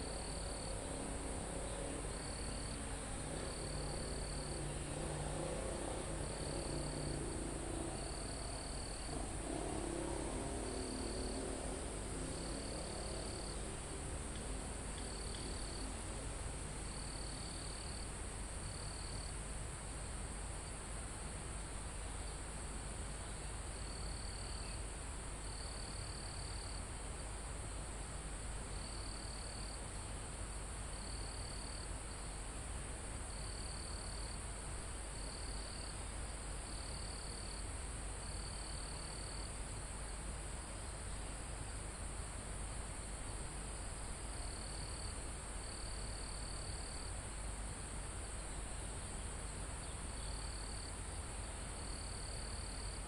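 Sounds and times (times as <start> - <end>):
insect on-off trills: 0.0 - 19.3
steady background hiss: 0.0 - 53.0.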